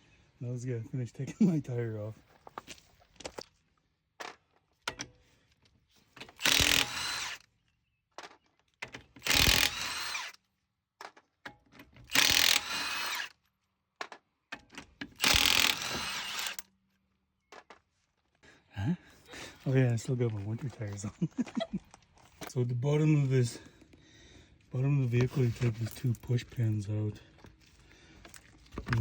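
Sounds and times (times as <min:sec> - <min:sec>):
impact wrench bursts: 0:06.3 - 0:07.4, 0:09.2 - 0:10.4, 0:12.1 - 0:13.3, 0:15.1 - 0:16.6.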